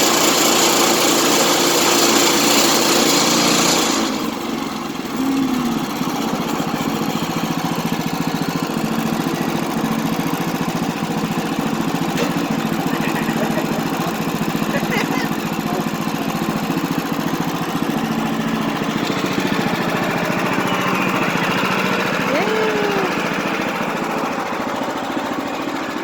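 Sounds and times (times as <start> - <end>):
small gasoline engine running: 0.0 - 26.0.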